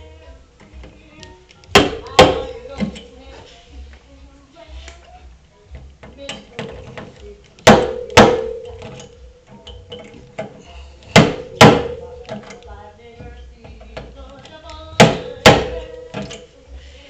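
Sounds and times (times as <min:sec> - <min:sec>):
faint music: 0:00.0 - 0:17.0
slide hammer knocking on steel panel: 0:06.0 - 0:09.0, 0:11.1 - 0:12.0
steel panel ringing: 0:06.3 - 0:12.6.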